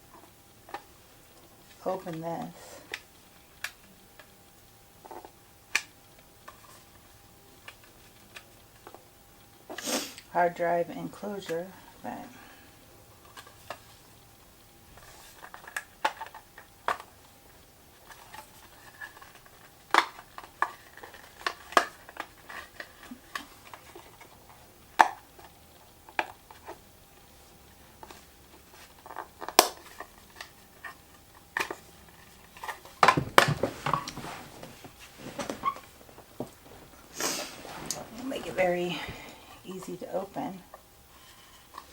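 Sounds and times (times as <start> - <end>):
box rustling: 32.3 - 39.1.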